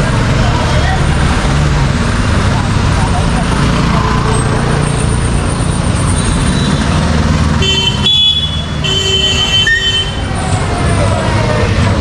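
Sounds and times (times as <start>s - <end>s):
traffic rumble: 0.0s - 12.0s
vehicle horn honking: 7.6s - 10.2s.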